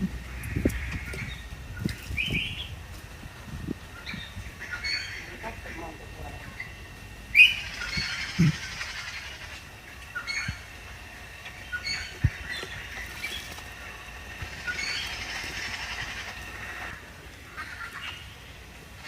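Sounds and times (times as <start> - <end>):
bird chirping: 0.0 - 2.8, 3.8 - 10.8, 11.4 - 13.7, 14.5 - 16.8.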